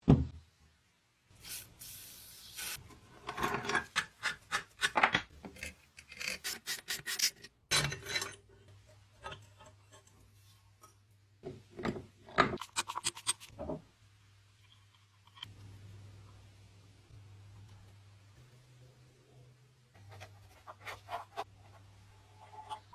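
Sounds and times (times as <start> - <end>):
steady hiss: 1.3 - 2.8.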